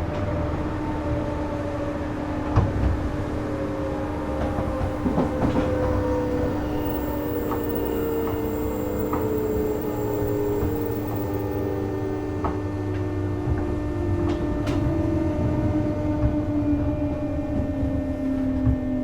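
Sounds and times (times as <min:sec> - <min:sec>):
electric train hum: 0:01.8 - 0:18.7
wheels rumbling on rail: 0:02.1 - 0:13.1
whine falling in pitch: 0:04.3 - 0:12.6
clicks: 0:05.0 - 0:12.6.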